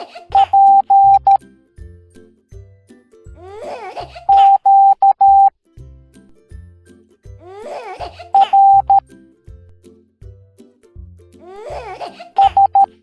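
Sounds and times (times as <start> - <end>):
bouncy children's music: 0.0 - 13.0
morse code beeps: 0.4 - 1.4, 4.3 - 5.5, 8.4 - 9.0, 12.4 - 12.9.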